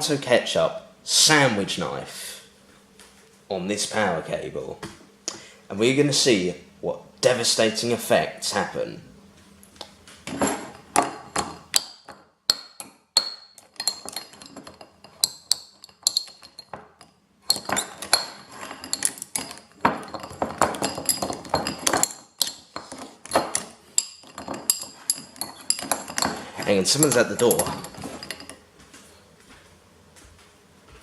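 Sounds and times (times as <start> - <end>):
knife clinking and scraping: 13.2 - 28.6.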